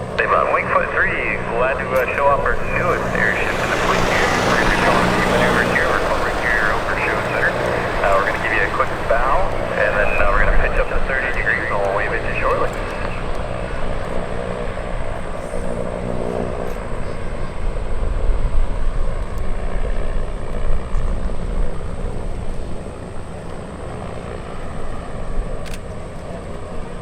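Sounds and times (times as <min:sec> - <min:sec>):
propeller engines droning: 0:00.0 - 0:17.9
low rumble: 0:01.1 - 0:11.7.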